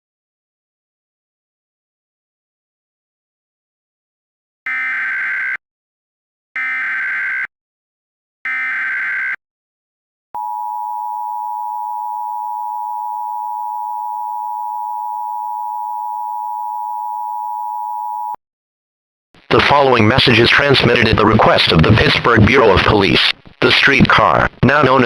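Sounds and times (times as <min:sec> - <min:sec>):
steady attention tone: 0:10.4 - 0:18.4.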